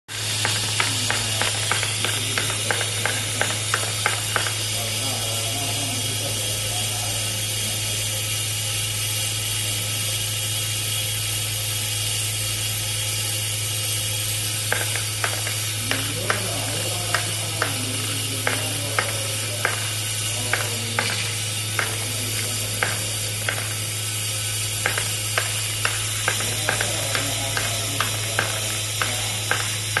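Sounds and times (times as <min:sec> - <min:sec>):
machine humming: 0:00.1 - 0:30.0
sharp mechanical clicks: 0:00.2 - 0:04.8, 0:14.7 - 0:24.0, 0:24.7 - 0:30.0.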